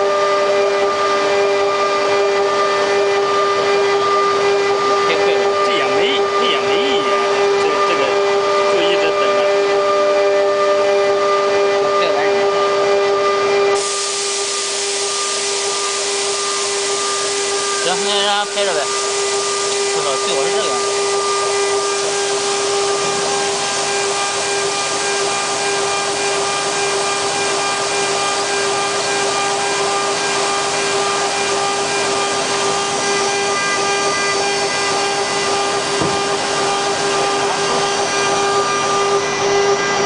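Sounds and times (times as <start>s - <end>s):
router spindle whining: 0.0s - 40.0s
hiss: 13.8s - 17.6s.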